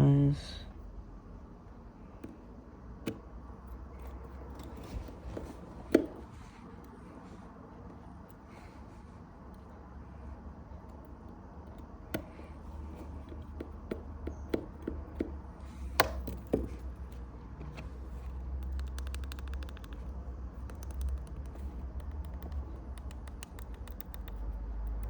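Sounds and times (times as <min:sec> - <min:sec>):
low steady hum: 0:00.0 - 0:25.0
screwdriver tapping tiny screws: 0:18.6 - 0:25.0.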